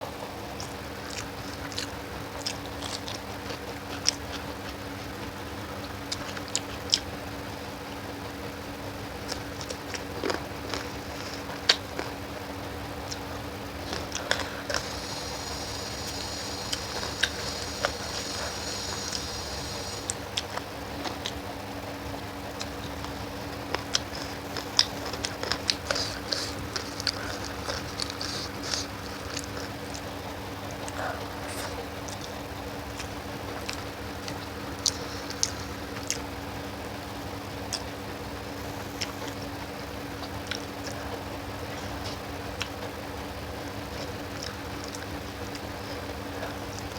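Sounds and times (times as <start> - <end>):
steady low hum: 0.0 - 46.9
biting and chewing: 0.1 - 46.9
wet clicks and smacks: 22.5 - 31.0.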